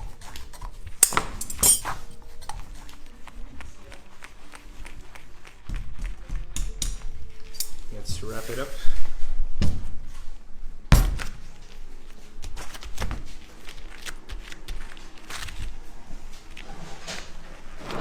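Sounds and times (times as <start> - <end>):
packaging handled: 11.1 - 18.0.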